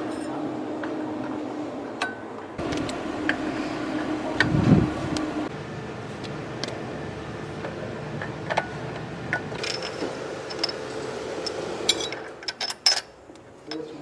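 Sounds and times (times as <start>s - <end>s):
steady hum: 0.0s - 12.5s
metal engine parts clicking: 2.0s - 4.5s, 7.6s - 14.0s.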